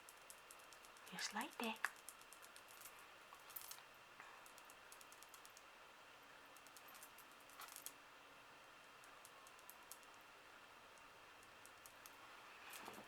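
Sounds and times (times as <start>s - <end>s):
faint small clicks and taps: 0.0s - 5.7s, 9.0s - 10.2s.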